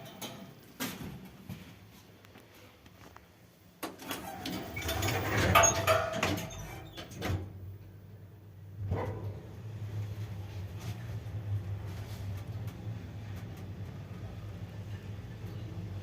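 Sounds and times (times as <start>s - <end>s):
low steady elevator hum: 0.0s - 16.0s
elevator sliding doors running: 3.8s - 7.9s, 8.8s - 16.0s.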